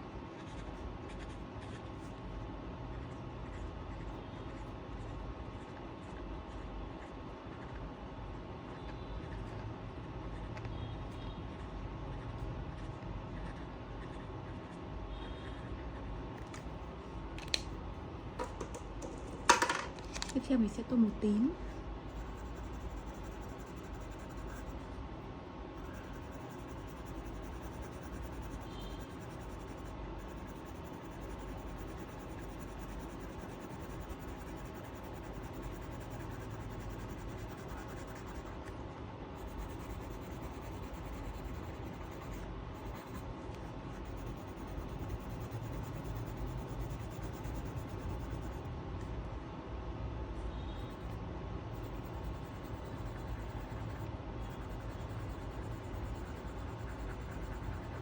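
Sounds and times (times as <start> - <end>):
colouring tool scratching on paper: 21.5 - 25.1, 25.7 - 48.7, 50.9 - 58.0.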